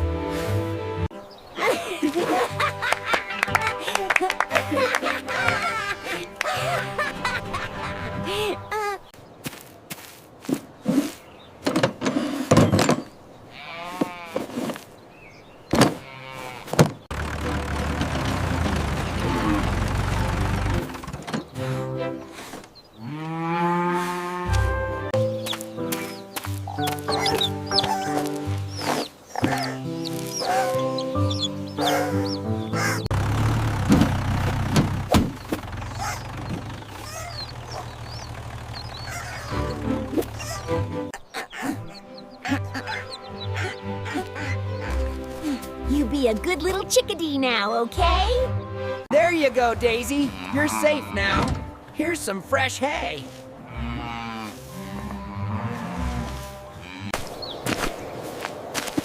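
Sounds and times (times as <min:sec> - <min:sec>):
music: 0:00.0 - 0:08.7, 0:17.4 - 0:22.4, 0:24.4 - 0:33.1, 0:39.4 - 0:55.5
tractor engine rumbling: 0:00.0 - 0:09.2, 0:16.7 - 0:23.1, 0:24.0 - 0:48.0, 0:49.0 - 0:57.4
farm animal calling: 0:12.3 - 0:33.3, 0:35.3 - 0:45.6, 0:49.3 - 0:52.6, 0:53.2 - 0:57.6
tractor engine running: 0:17.0 - 0:22.6, 0:24.6 - 0:41.2.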